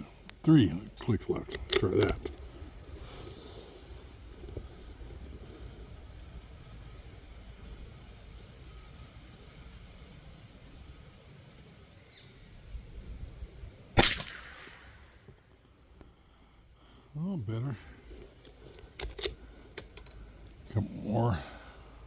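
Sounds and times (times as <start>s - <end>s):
insects droning: 0.0s - 22.0s
rifle shot: 14.0s - 15.3s.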